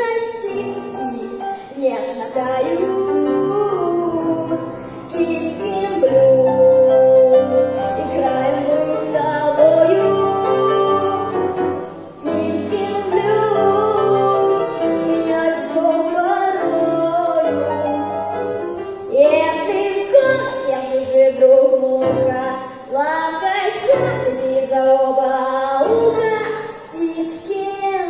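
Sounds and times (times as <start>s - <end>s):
girl singing: 0.0s - 17.9s, 18.8s - 28.0s
piano accompaniment: 0.0s - 28.0s.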